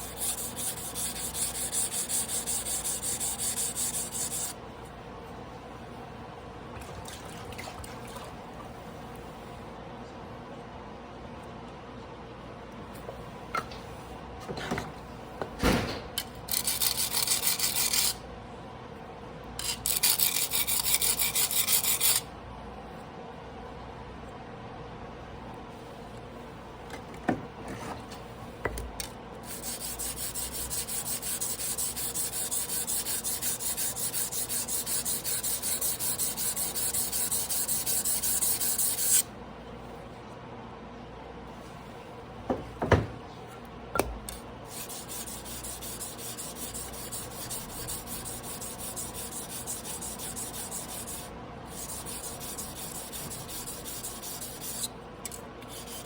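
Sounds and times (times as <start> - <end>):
knife scraping on a whetstone: 0.0 - 4.5, 19.6 - 22.2, 29.5 - 39.2, 44.7 - 56.0.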